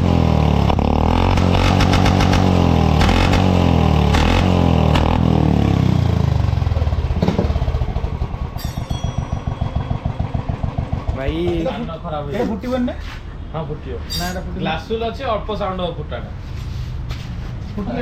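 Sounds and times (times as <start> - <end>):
motorcycle engine revving: 0.0 - 11.7.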